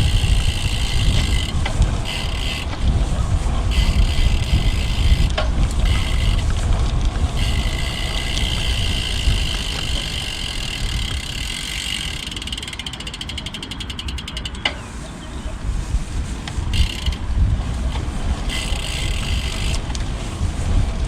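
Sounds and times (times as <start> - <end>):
wind on microphone: 0.0 - 12.8, 14.6 - 21.0
bicycle freewheel hub buzzing: 0.0 - 14.8, 16.6 - 21.0
tyres rumbling: 0.0 - 21.0.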